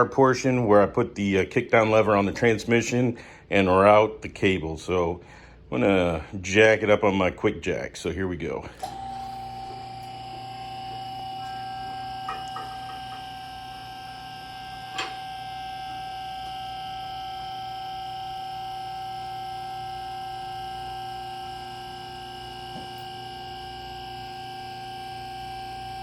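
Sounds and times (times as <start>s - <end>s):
hydraulic pump whining: 8.7s - 26.0s.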